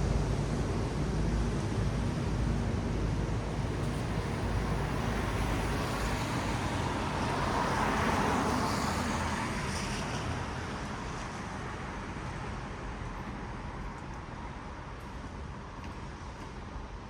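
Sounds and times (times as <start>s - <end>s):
low traffic rumble: 0.0s - 17.0s
tyres hissing on wet road: 3.5s - 12.3s.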